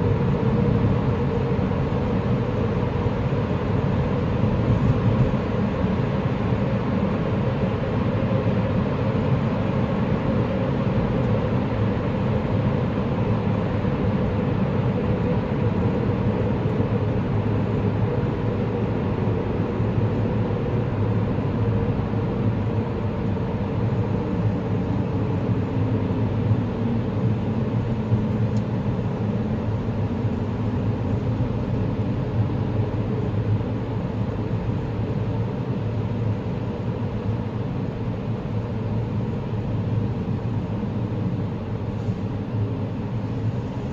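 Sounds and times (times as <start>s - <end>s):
low rumble of tunnel traffic: 0.0s - 43.9s.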